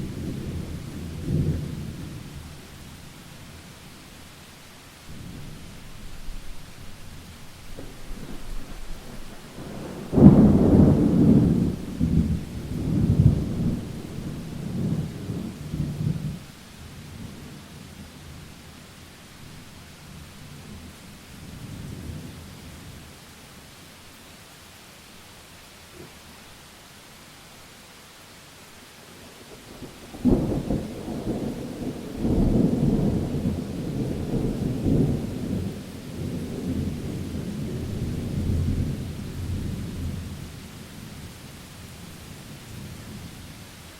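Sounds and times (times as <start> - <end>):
rain hiss: 0.0 - 43.9
thunder crack and rumble: 5.1 - 16.4, 29.8 - 40.5.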